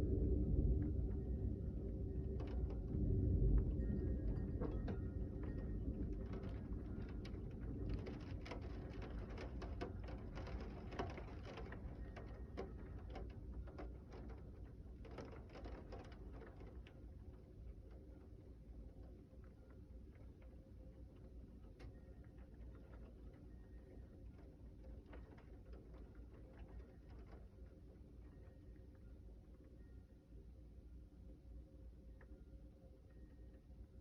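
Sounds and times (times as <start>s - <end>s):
raindrops pattering: 6.1s - 17.4s.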